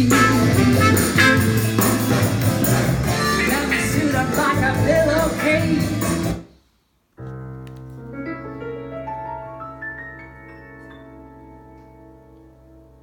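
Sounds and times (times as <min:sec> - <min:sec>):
song with singing over loudspeakers: 0:00.0 - 0:06.4.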